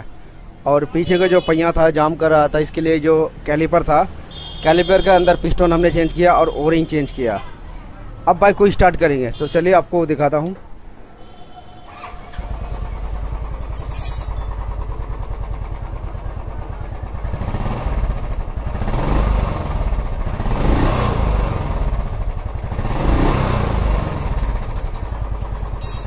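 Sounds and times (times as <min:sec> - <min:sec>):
motorcycle engine revving: 0:11.9 - 0:26.0
motorcycle engine starting and idling: 0:11.9 - 0:26.0.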